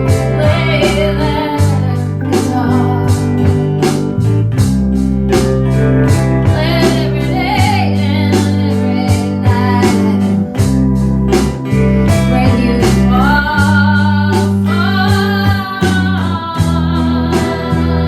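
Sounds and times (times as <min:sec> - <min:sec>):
person singing: 0:00.0 - 0:03.8, 0:06.4 - 0:10.5, 0:11.6 - 0:18.0
bass line: 0:00.0 - 0:18.0
guitar: 0:00.0 - 0:18.0.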